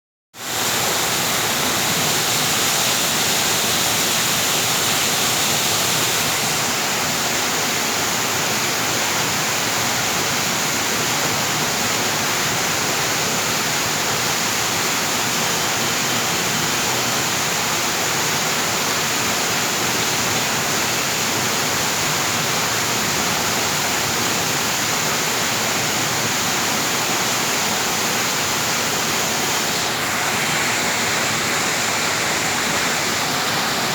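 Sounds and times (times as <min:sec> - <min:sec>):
water falling and splashing: 0:00.4 - 0:07.8.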